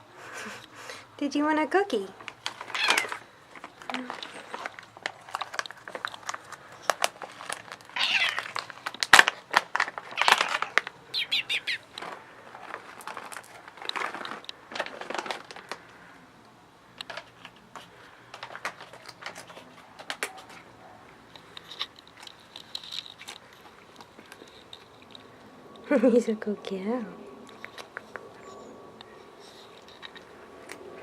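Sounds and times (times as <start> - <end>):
treat packet crinkling: 2.2 - 16.2, 17.0 - 26.0, 27.4 - 28.5
cat meowing: 2.6 - 3.2, 7.9 - 8.6, 10.2 - 11.9.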